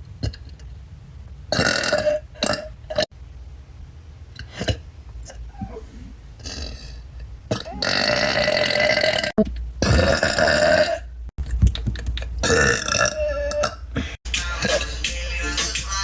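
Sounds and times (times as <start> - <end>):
woman burping: 1.6 - 3.1, 6.4 - 11.1, 12.4 - 14.0.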